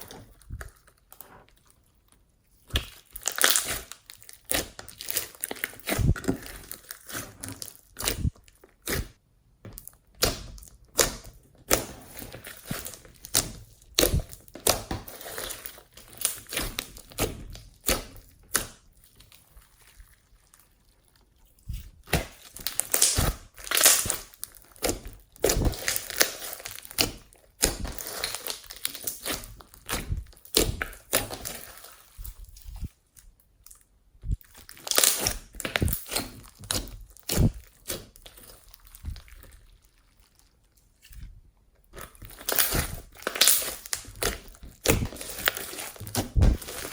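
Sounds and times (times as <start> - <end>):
slime popping and crackling: 2.6 - 20.8, 21.7 - 41.2, 41.9 - 46.9.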